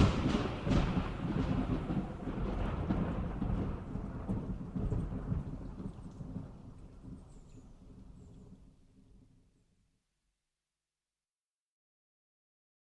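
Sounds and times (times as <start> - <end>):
low rumble: 0.0 - 7.2.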